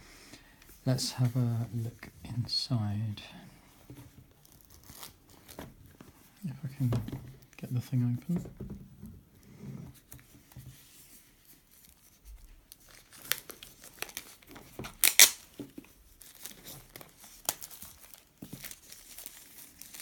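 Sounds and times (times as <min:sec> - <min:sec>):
shrink-wrap crinkling: 0:04.2 - 0:06.1, 0:11.7 - 0:20.0
plastic wrap ripping: 0:04.3 - 0:05.9, 0:12.7 - 0:15.6, 0:16.2 - 0:20.0.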